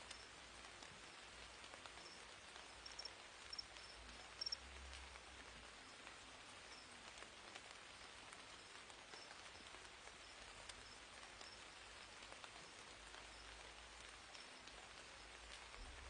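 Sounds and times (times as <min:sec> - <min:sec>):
faint hiss: 0:00.0 - 0:16.0
crickets chirping: 0:02.8 - 0:04.6.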